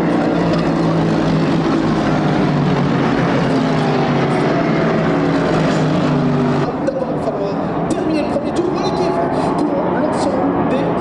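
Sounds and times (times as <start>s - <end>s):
racing car engines at high revs: 0.0s - 11.0s.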